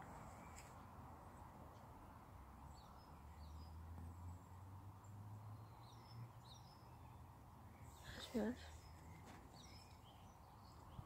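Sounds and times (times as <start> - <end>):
distant bird chirps: 2.6 - 11.0.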